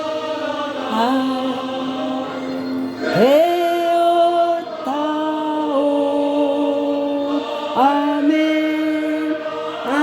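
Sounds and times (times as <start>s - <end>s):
person singing long notes: 3.1s - 10.0s.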